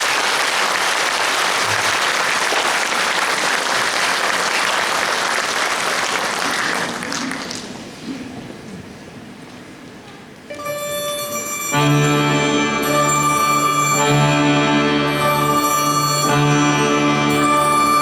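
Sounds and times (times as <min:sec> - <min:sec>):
audience applauding: 0:00.0 - 0:08.0.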